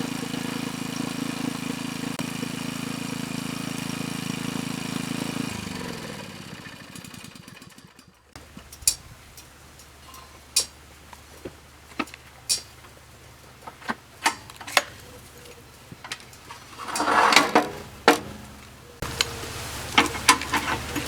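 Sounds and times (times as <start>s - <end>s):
small engine running: 0.0s - 21.0s
sharp metallic clicks and clanks: 7.7s - 19.4s.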